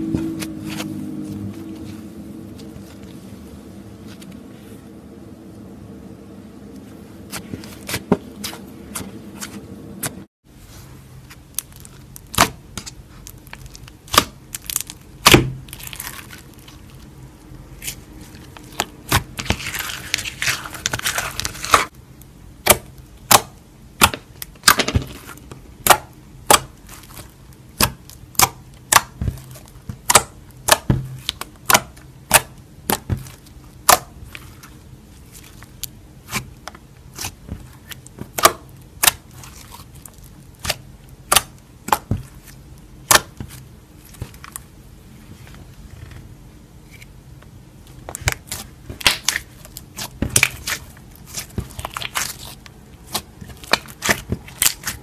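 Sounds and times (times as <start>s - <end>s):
slime crackling: 11.2s - 22.0s, 22.6s - 44.7s, 47.9s - 55.0s.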